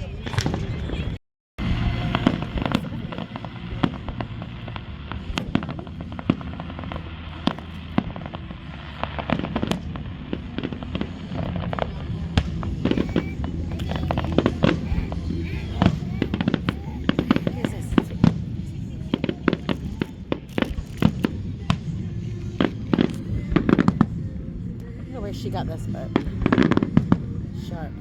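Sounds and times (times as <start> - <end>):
fireworks cracking and popping: 0.2 - 24.9.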